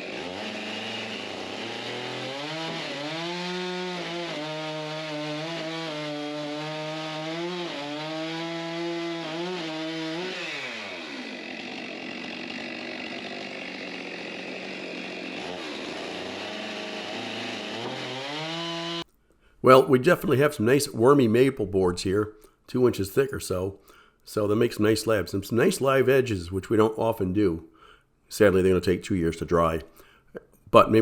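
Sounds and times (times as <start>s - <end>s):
chainsaw cutting log: 0.0s - 19.1s.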